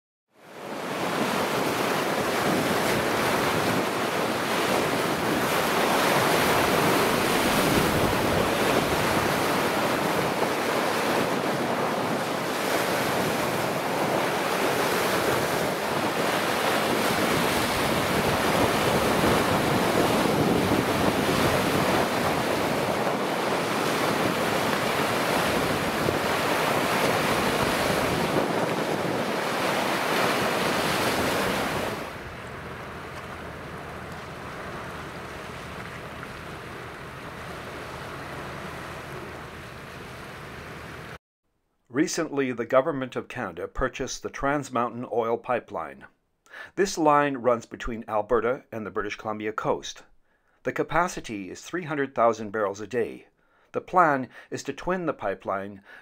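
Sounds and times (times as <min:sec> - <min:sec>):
sea waves rushing: 0:00.4 - 0:41.2
wind buffeting microphone: 0:02.2 - 0:40.9.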